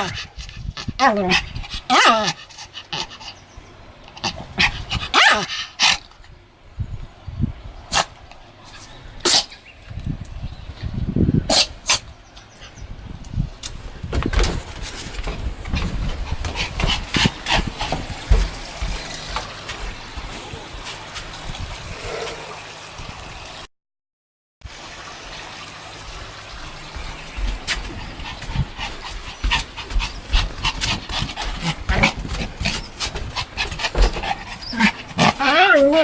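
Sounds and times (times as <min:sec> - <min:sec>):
small dog whimpering and yipping: 0:34.6 - 0:36.0.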